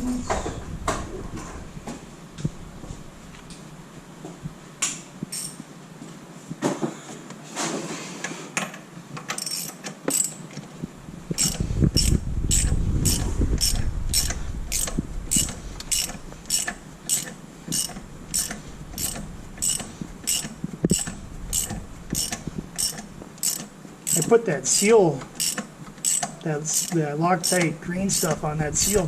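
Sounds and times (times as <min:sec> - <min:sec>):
hand ratchet clicking: 0:05.3 - 0:05.6, 0:09.3 - 0:10.4, 0:11.4 - 0:29.0
low rumble: 0:11.0 - 0:17.0.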